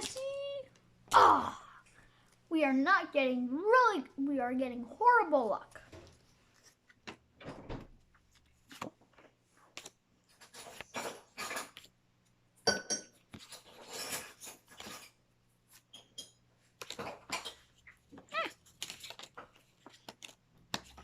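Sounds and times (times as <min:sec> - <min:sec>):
cards rustling and sliding: 0:05.9 - 0:07.2, 0:08.0 - 0:12.0, 0:13.3 - 0:15.1, 0:16.6 - 0:21.0.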